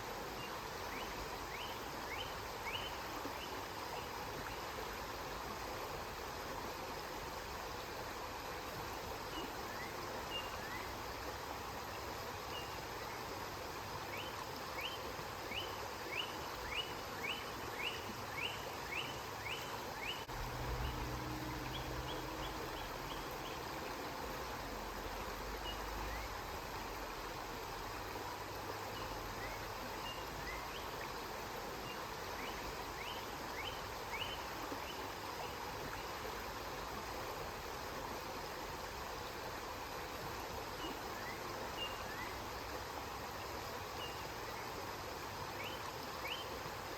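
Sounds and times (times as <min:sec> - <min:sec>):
river water flowing: 0:00.0 - 0:46.9
bird chirping: 0:15.5 - 0:23.7
low rumble: 0:20.3 - 0:23.3.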